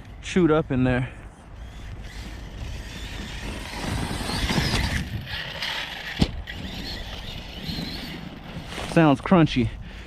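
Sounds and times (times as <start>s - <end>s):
toy car drivetrain grinding: 1.6s - 8.9s.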